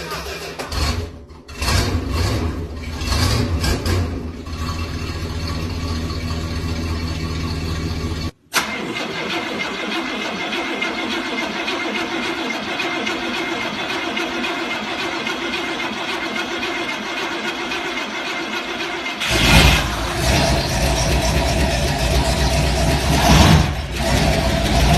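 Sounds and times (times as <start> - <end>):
engine starting: 0.0 - 4.2, 8.5 - 24.9
car engine idling: 0.0 - 8.5, 9.7 - 24.9.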